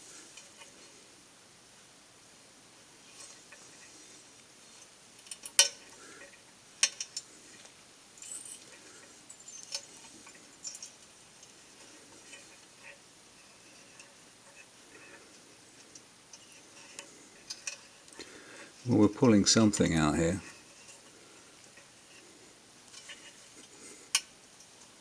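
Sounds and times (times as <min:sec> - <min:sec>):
metal tools clinking: 0:08.2 - 0:11.1, 0:15.8 - 0:18.2
metal scrape: 0:11.6 - 0:22.3, 0:22.9 - 0:24.3.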